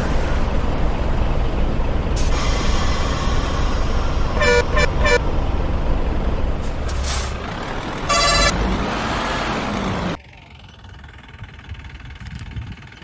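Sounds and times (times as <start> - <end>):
vehicle engine rumble: 0.0 - 13.0
vehicle horn toots: 4.4 - 5.2, 8.1 - 8.6.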